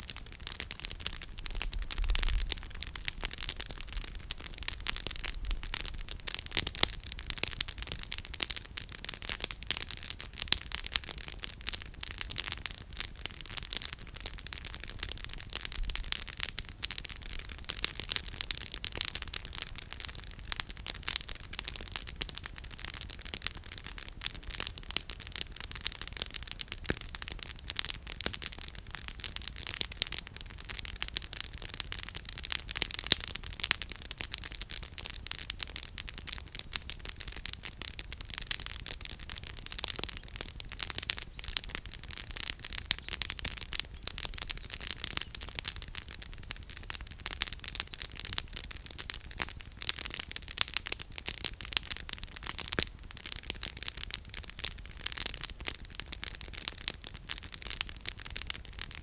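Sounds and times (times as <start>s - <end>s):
campfire crackling and popping: 0.0s - 59.0s.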